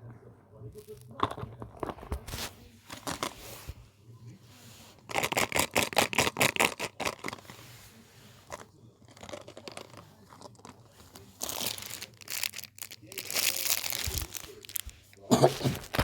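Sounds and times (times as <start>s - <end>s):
crumpling rustle: 8.4s - 16.0s
packaging crinkling: 8.5s - 16.0s
packaging ripping: 11.4s - 16.0s.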